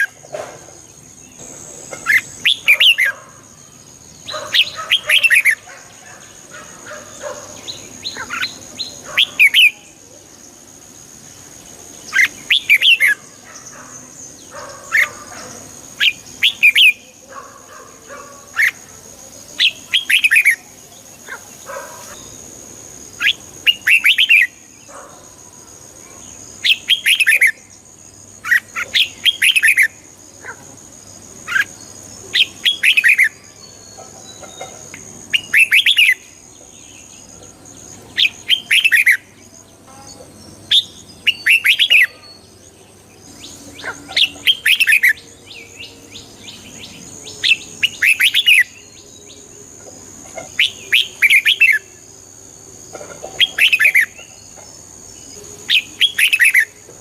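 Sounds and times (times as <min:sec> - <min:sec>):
bird singing whistled notes: 0:02.1 - 0:03.1, 0:12.0 - 0:13.2, 0:32.4 - 0:33.9, 0:35.4 - 0:36.3, 0:38.1 - 0:39.4, 0:40.7 - 0:42.5, 0:43.4 - 0:49.5, 0:55.3 - 0:56.8.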